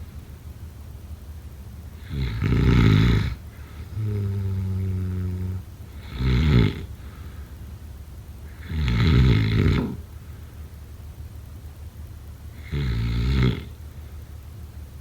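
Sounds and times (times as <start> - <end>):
low humming out-breath: 0.0 - 0.7, 1.4 - 15.0
rattling snore: 2.0 - 7.5, 8.4 - 10.1, 12.5 - 13.8.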